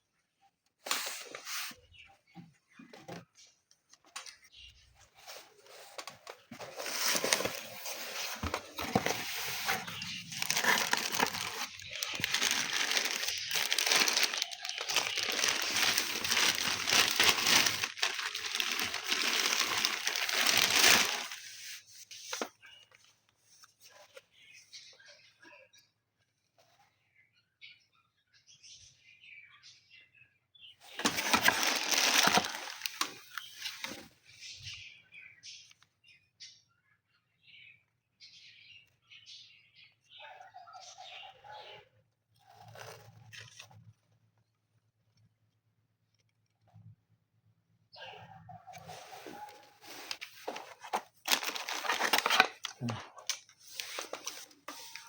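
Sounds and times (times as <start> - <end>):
crinkling rustling handling noise: 4.0 - 22.8, 30.8 - 34.1, 42.5 - 44.0, 48.9 - 55.0.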